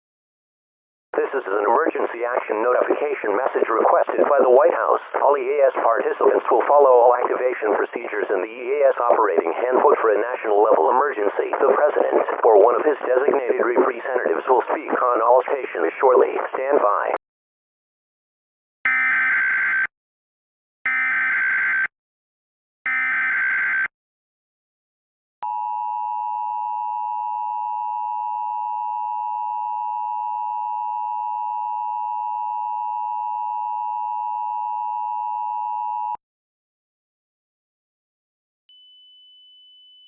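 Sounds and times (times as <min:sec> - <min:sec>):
steady two-tone alert signal: 0:22.9 - 0:23.9.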